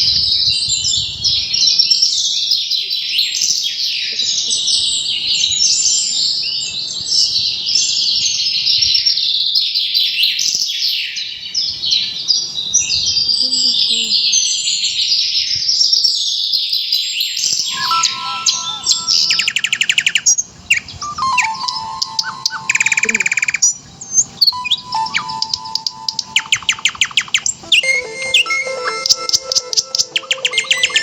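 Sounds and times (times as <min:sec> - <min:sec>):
songbirds chirping and trilling: 0:00.0 - 0:31.0
soft music with held tones: 0:17.7 - 0:19.6, 0:21.0 - 0:23.4, 0:24.5 - 0:31.0.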